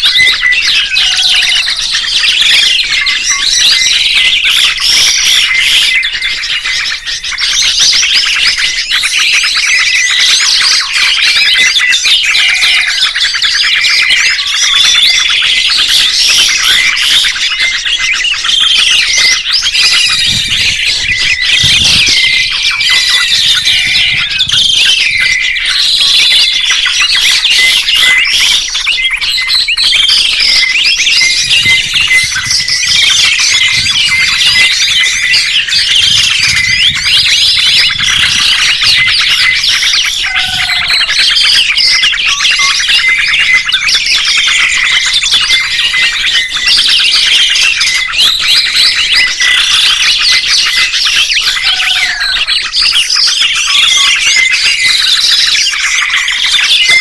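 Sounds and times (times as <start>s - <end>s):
songbirds chirping and twittering: 0.0s - 57.0s.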